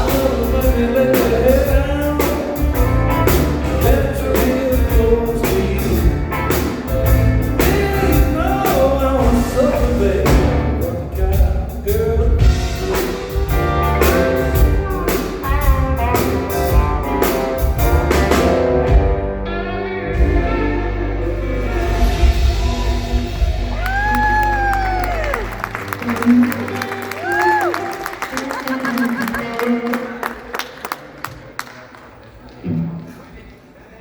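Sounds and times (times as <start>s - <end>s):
person singing: 0.0s - 16.1s, 19.6s - 30.5s
rock band playing: 0.0s - 31.2s.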